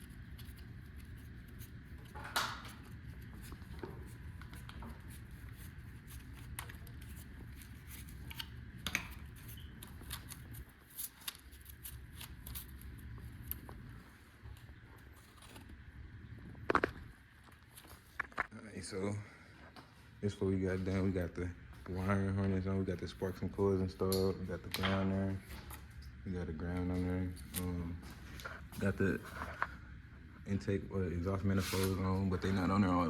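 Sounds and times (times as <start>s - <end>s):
low steady hum: 0.0s - 33.0s.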